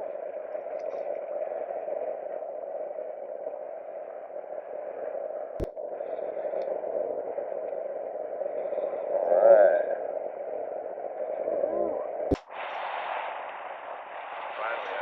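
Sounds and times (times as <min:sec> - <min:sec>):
creek water flowing: 0:12.3 - 0:15.0.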